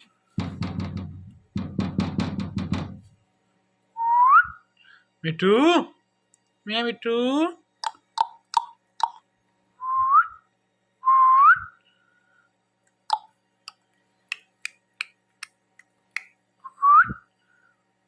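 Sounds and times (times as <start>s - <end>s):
parrots clicking and chirping: 7.8s - 9.2s, 14.3s - 15.1s.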